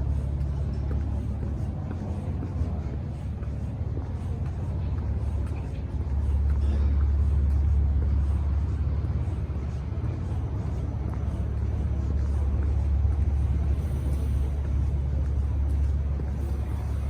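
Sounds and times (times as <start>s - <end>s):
low street rumble: 0.0s - 17.0s.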